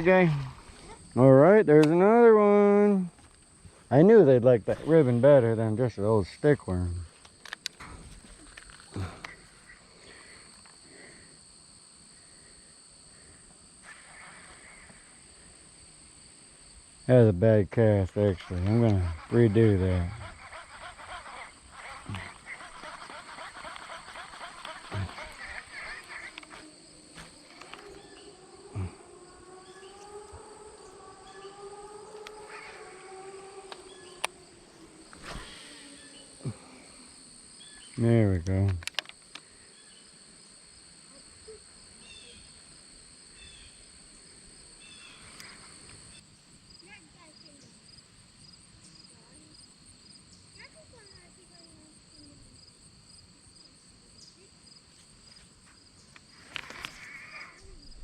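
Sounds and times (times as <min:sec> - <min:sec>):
insects droning: 0:00.0 - 0:58.0
faint rustles: 0:20.1 - 0:31.0, 0:32.0 - 0:37.3, 0:54.9 - 0:58.0
faint low drone: 0:24.9 - 0:37.1.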